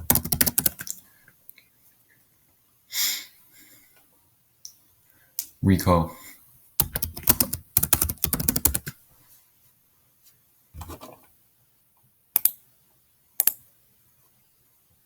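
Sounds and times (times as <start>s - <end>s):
fast typing on keyboard: 0.0s - 1.0s, 6.8s - 8.9s.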